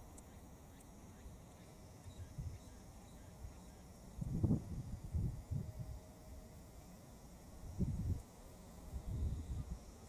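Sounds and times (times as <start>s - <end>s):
faint high ticks: 0.0s - 2.8s.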